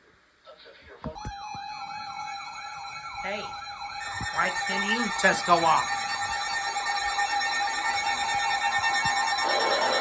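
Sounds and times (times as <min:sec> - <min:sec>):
shrill two-tone alarm: 0:01.2 - 0:10.0
wailing siren tone: 0:05.8 - 0:10.0.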